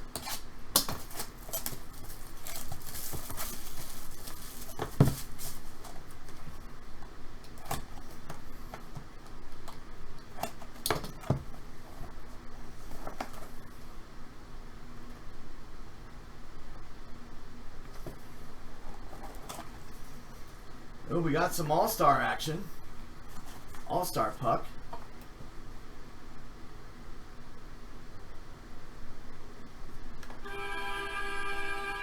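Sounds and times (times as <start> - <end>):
packaging tearing and crinkling: 0.2 - 6.1.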